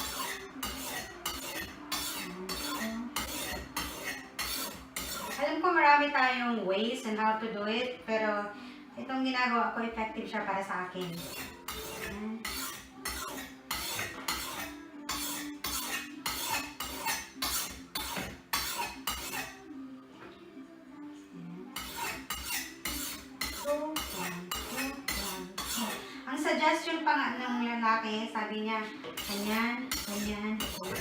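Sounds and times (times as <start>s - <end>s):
knife scraping sharpening stone: 0.0s - 5.4s, 11.0s - 19.6s, 21.8s - 26.0s, 29.2s - 31.0s.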